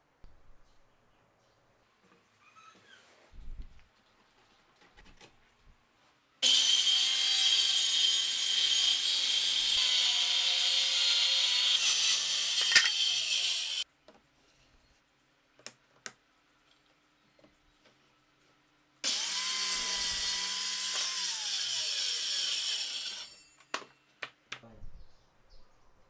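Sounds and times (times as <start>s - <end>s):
power saw cutting wood: 6.4s - 13.8s, 19.0s - 23.4s.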